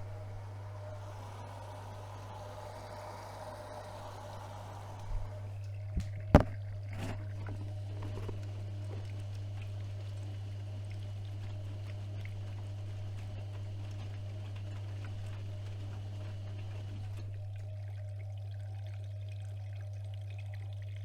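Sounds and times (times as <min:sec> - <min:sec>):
washing machine humming: 0:00.0 - 0:21.0
water moving in drum: 0:00.0 - 0:21.0
washing machine knocks: 0:06.0 - 0:06.6.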